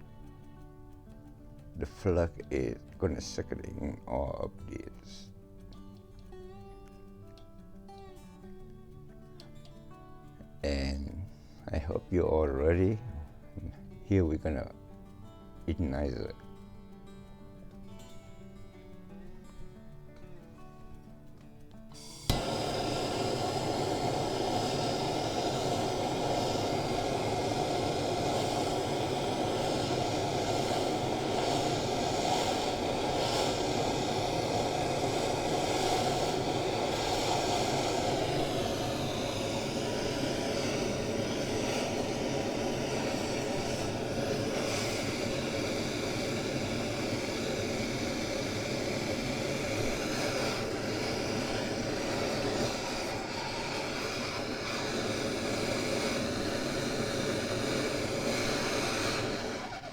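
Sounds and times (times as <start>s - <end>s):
propane torch flame hissing: 0.0s - 59.9s.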